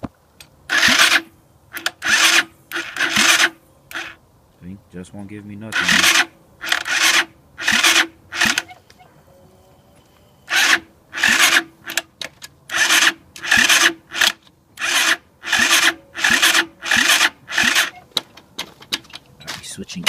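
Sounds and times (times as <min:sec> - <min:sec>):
engine cranking without starting: 0:00.7 - 0:04.2, 0:05.7 - 0:08.8, 0:10.5 - 0:18.3.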